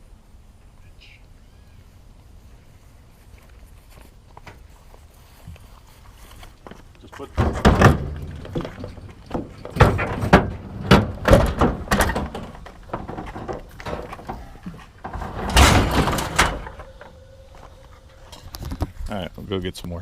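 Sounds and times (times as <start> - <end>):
metal scraping crash: 7.4 - 18.6
scrap metal clanking: 7.4 - 18.8.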